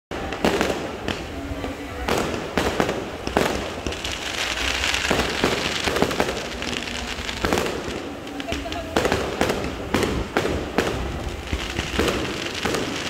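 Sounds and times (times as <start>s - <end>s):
fireworks bangs: 0.1s - 13.0s
fireworks hissing and crackling: 0.1s - 13.0s.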